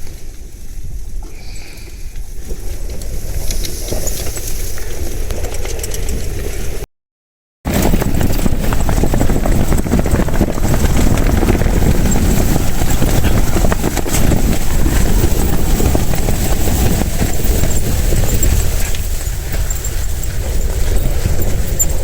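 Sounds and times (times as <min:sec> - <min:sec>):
wind buffeting microphone: 0:07.7 - 0:22.0.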